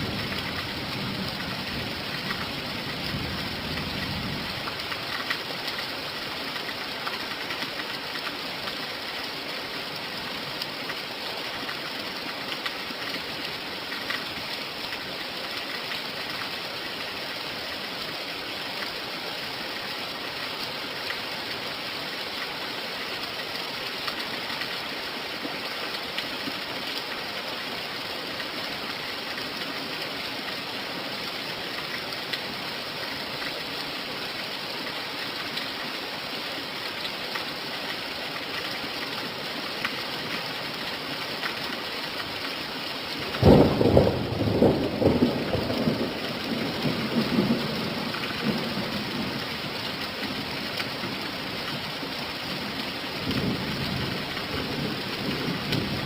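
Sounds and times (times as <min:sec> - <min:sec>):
rain hissing: 0:00.0 - 0:56.0
thunder rumbling: 0:43.3 - 0:49.4.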